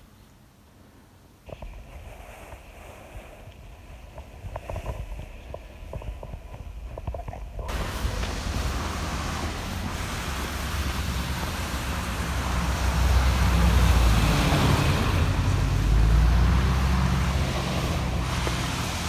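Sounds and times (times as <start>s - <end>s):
rushing noise: 7.7s - 19.0s
vehicle rumbling in motion: 7.7s - 19.0s.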